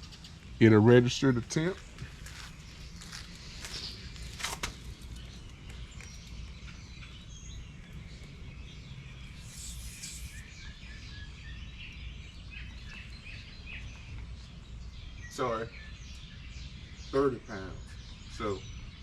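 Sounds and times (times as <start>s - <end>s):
birds chirping: 0.0s - 19.0s
brief hiss: 9.4s - 10.5s.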